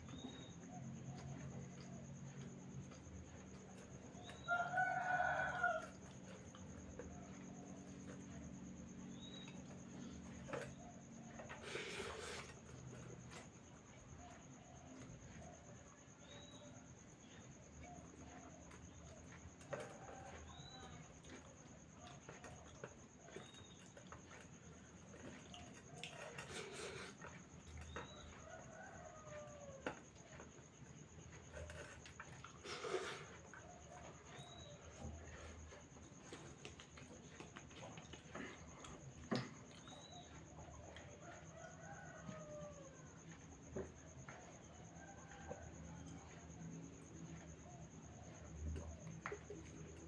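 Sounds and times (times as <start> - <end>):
faint room hum: 0.0 - 50.0
rooster crowing: 4.3 - 6.2, 28.0 - 30.0, 41.1 - 43.4.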